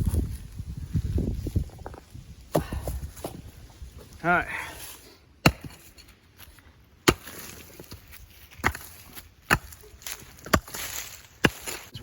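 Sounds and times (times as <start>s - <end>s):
pick axe striking ground: 2.5s - 3.4s, 5.4s - 12.0s.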